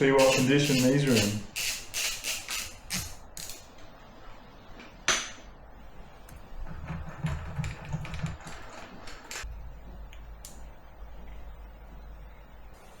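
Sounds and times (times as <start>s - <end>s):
hand tools scraping and clicking: 0.0s - 3.7s.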